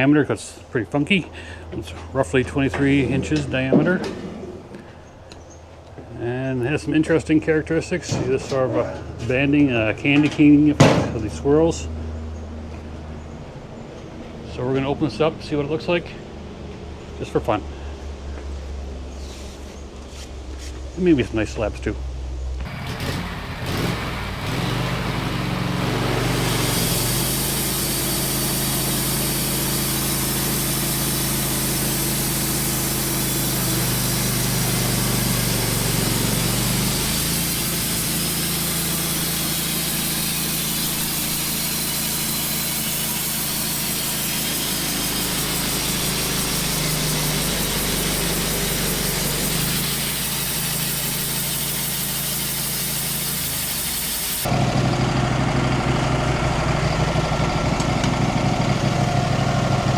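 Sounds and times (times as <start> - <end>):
engine drone: 0.0 - 20.0, 21.4 - 59.9
band saw blade cutting log: 22.6 - 54.8.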